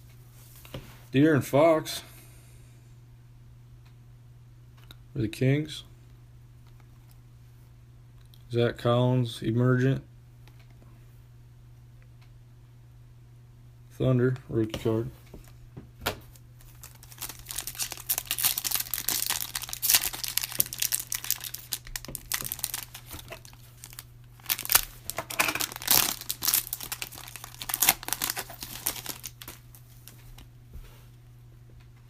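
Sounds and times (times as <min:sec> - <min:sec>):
low electrical hum: 0:00.0 - 0:32.0
foil wrappers crinkling and tearing: 0:16.6 - 0:30.4.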